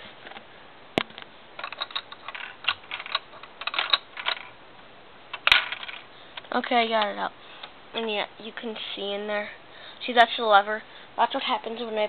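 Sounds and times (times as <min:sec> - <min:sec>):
plastic bricks clicking and rattling: 0:01.6 - 0:04.5, 0:05.4 - 0:06.1.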